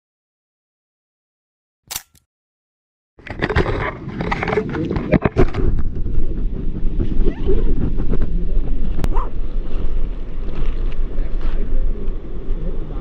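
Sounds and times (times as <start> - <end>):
sharp click: 1.9 - 2.3
wind rumbling on microphone: 3.2 - 13.0.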